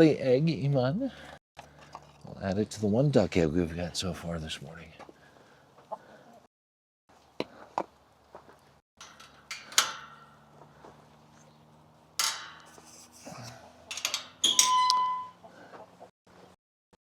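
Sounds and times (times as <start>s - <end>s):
sharp clicks and knocks: 9.0s - 10.9s
hard objects scraping and rustling: 12.2s - 14.6s.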